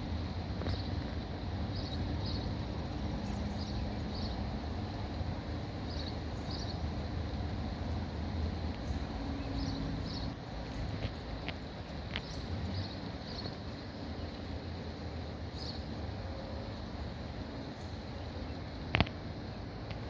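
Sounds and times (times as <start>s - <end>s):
low rumble and hiss outdoors: 0.0s - 20.0s
small bird chirping: 0.6s - 4.5s, 5.8s - 6.9s, 8.8s - 14.5s.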